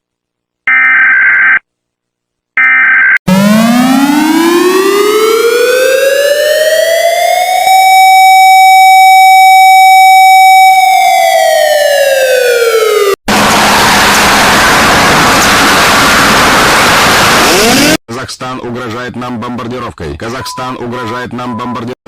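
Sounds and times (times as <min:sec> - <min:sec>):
electronic wailing siren: 0:02.6 - 0:14.2
loud hissing static: 0:14.4 - 0:18.0.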